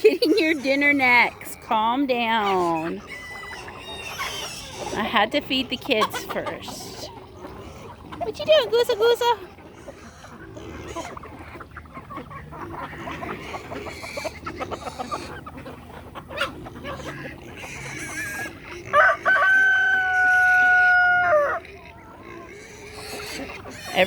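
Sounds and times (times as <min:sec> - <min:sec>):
chickens clucking: 0:00.0 - 0:24.0
rooster crowing: 0:18.9 - 0:21.6.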